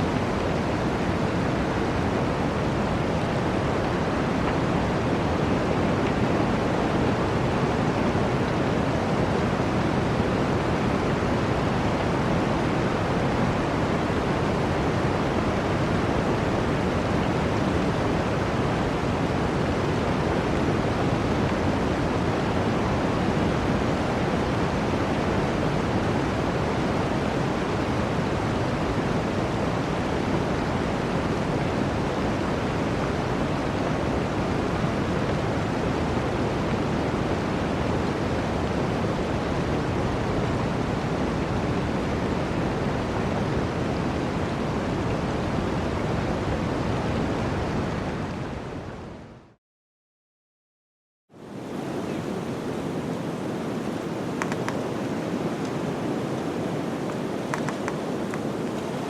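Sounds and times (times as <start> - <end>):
flowing water rushing: 0.0 - 49.1, 51.4 - 59.0.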